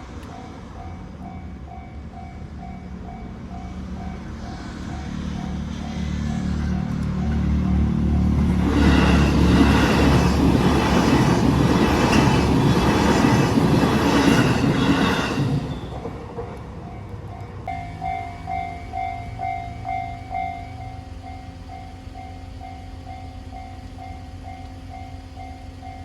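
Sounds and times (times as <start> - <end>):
train wheels rushing on rail: 0.0 - 26.0
level crossing warning bell: 0.3 - 4.4, 16.8 - 26.0.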